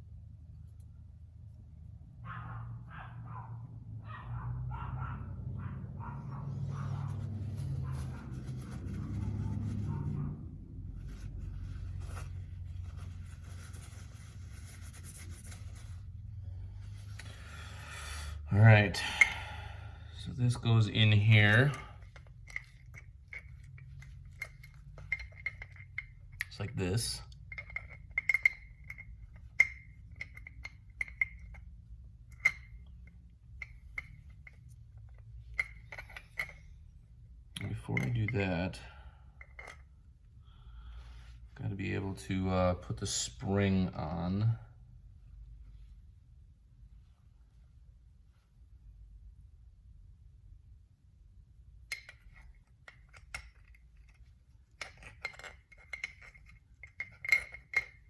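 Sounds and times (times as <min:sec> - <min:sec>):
small metal parts clinking: 0:20.5 - 0:36.9, 0:51.9 - 0:58.0.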